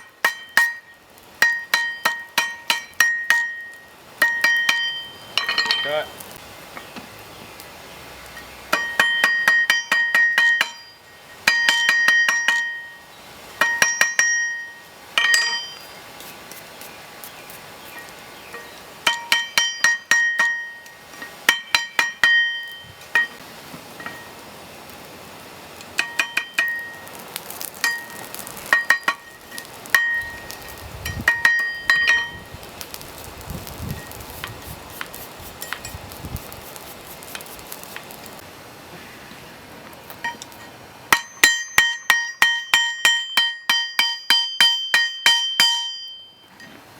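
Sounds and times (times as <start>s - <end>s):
hammer ringing on steel anvil: 0.2s - 6.1s, 8.7s - 13.0s, 13.6s - 15.9s, 18.6s - 23.4s, 26.0s - 27.1s, 30.0s - 32.4s, 40.3s - 46.8s.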